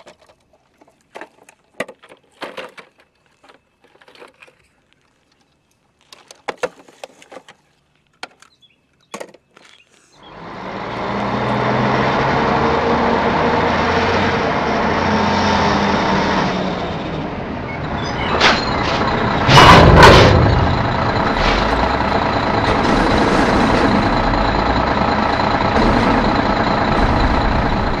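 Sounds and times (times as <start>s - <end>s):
diesel truck engine running: 10.3s - 28.0s.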